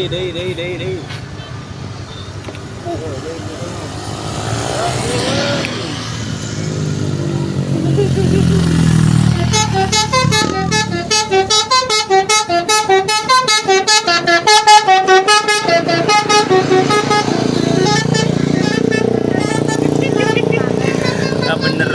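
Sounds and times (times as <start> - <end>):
vehicle noise: 0.0 - 21.9
multi-tone bus horn melody: 9.0 - 21.9.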